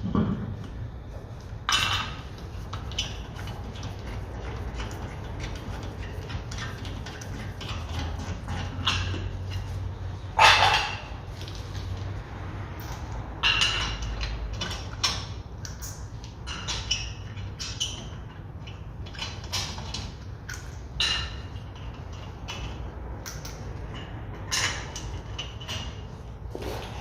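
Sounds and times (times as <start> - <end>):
metallic clinks and knocks: 12.7 - 26.2.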